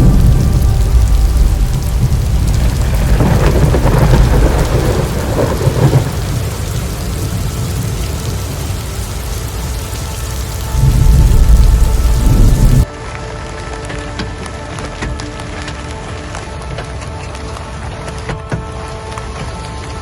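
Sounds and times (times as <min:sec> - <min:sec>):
low rumble of thunder: 0:00.0 - 0:12.9
heavy rain falling: 0:00.0 - 0:20.0.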